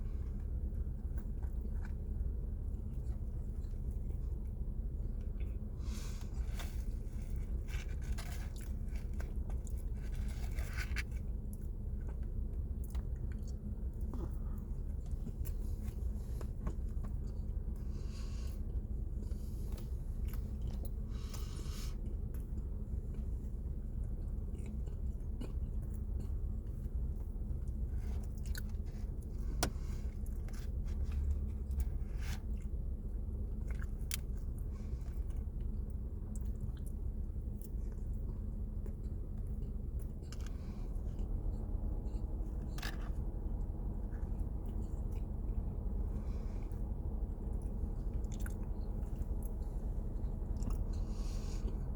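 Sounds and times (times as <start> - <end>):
low background hum: 0.0 - 51.9
person chewing: 24.0 - 51.9.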